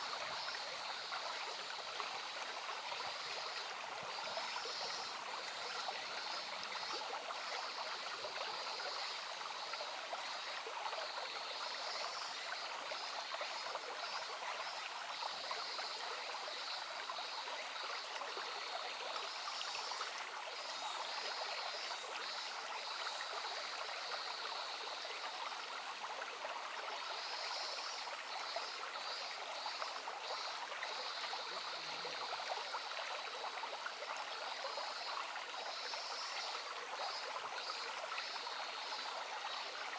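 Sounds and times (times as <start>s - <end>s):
brook babbling: 0.0s - 39.9s.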